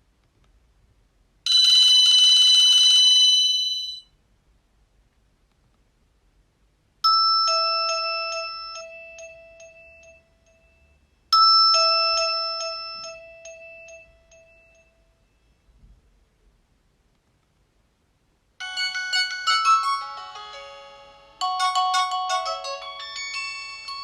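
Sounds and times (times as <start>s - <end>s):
phone ding-dong chime: 1.5s - 4.1s, 7.1s - 15.2s, 18.6s - 24.0s.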